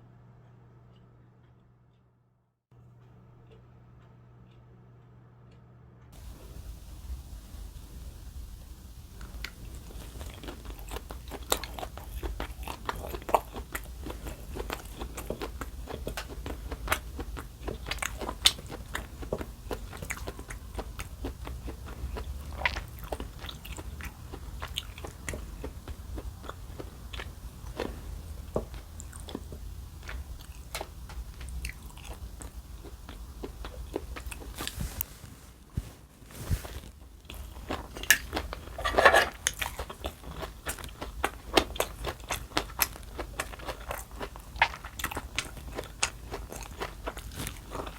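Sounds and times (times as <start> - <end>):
crunching crisp food: 6.2 - 47.9.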